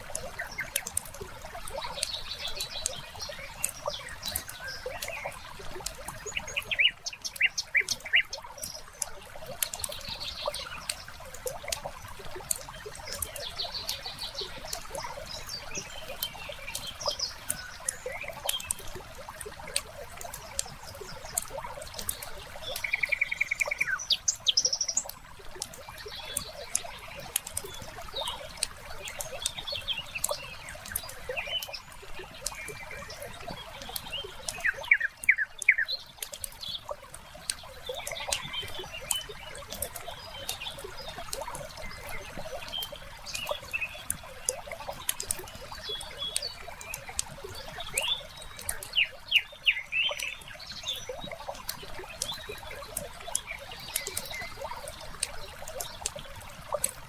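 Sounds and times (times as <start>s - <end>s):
small birds chirping: 0.0s - 57.0s
wood fire crackling and popping: 36.2s - 40.1s.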